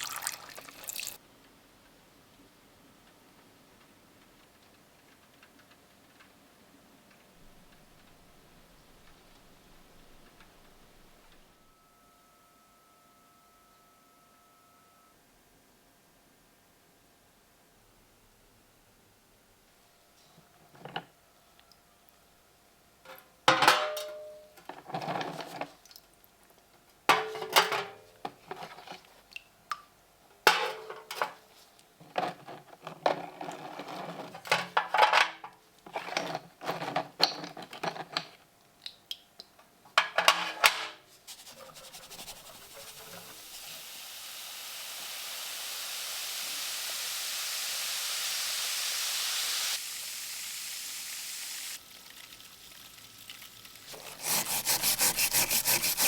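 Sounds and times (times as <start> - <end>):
rising hiss: 41.3 - 51.8.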